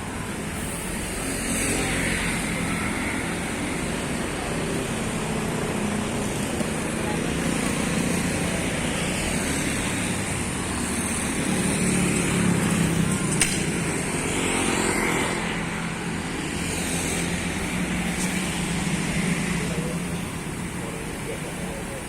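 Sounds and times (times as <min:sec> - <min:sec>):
street traffic: 0:00.0 - 0:22.0
sharp click: 0:13.3 - 0:13.8.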